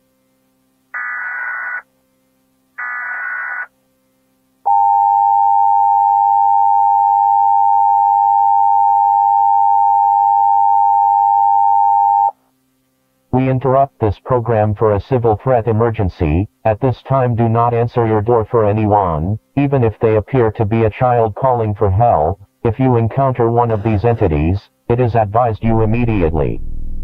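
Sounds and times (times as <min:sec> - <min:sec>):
screeching data bursts: 0:01.0 - 0:01.8, 0:02.8 - 0:03.7.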